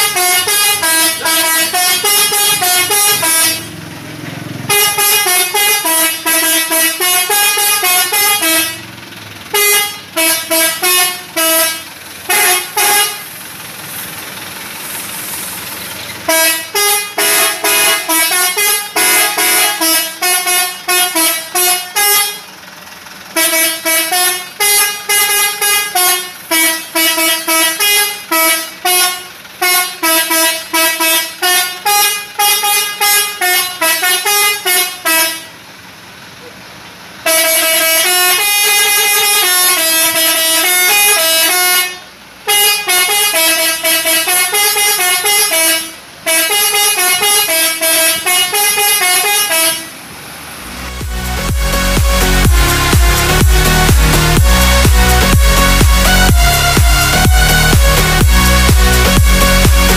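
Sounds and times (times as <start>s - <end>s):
musical air horns playing tunes: 0.0s - 3.7s, 4.6s - 8.9s, 9.5s - 13.4s, 16.3s - 22.5s, 23.3s - 35.5s, 37.2s - 50.0s, 50.7s - 59.9s.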